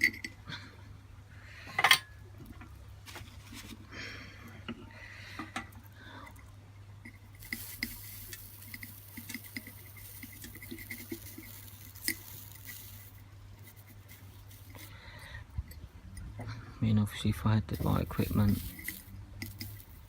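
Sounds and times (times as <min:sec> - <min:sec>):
steady low hum: 0:00.0 - 0:20.0
soldering sizzle and crackle: 0:07.2 - 0:14.9, 0:17.7 - 0:20.0.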